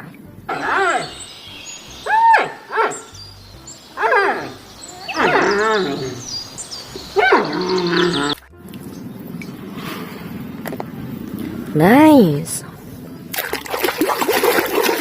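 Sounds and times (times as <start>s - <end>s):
background music: 0.0s - 15.0s
loud animal calls: 0.5s - 8.5s.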